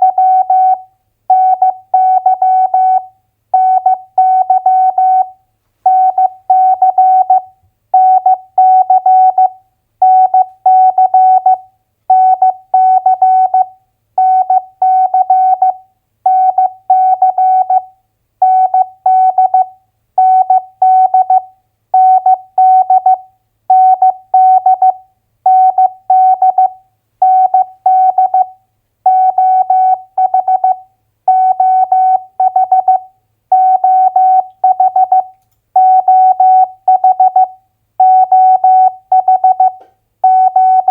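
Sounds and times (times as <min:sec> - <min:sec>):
morse code beeps: 0:22.0 - 0:28.5, 0:29.1 - 0:40.9.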